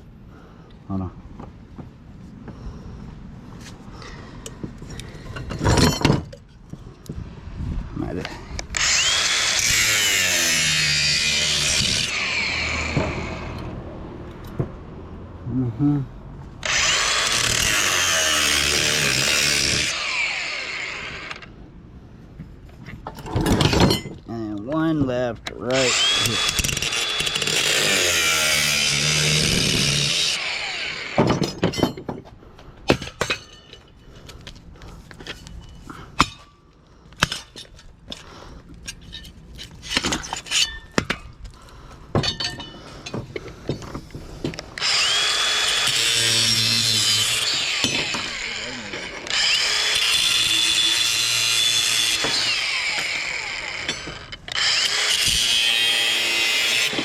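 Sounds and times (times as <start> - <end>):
metal parts clanking: 4.9 - 6.6, 23.0 - 24.3, 31.2 - 32.2, 32.9 - 34.0, 38.8 - 41.3, 42.2 - 44.9
power tool cutting metal: 8.7 - 13.7, 16.6 - 21.5, 25.7 - 31.5, 44.8 - 57.0.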